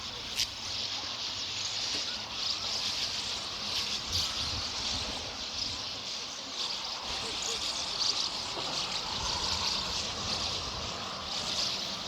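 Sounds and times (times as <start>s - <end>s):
birds twittering: 0.9s - 12.0s.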